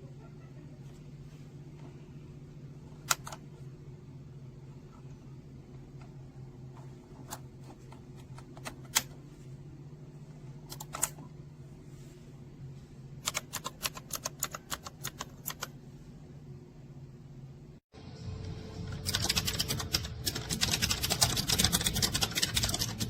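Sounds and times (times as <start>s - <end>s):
steady low hum: 0.0s - 23.0s
mechanical keyboard keystrokes: 3.0s - 3.4s, 10.7s - 11.2s, 13.2s - 15.7s, 19.0s - 23.0s.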